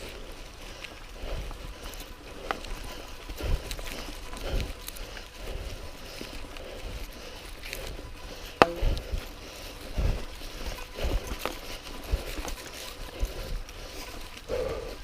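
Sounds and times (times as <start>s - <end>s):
mountain bike rattling: 0.0s - 15.0s
low thumps of bike bumping: 8.6s - 9.2s.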